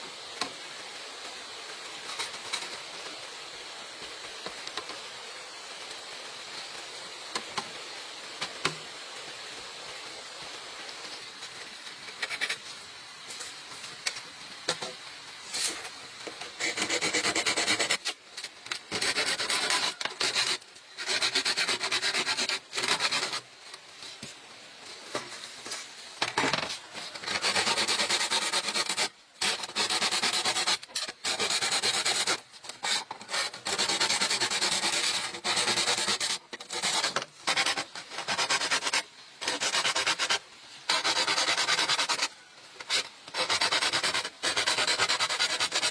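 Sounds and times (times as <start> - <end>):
hand tool scraping bamboo: 12.0 - 12.7, 14.7 - 23.5, 25.1 - 45.9.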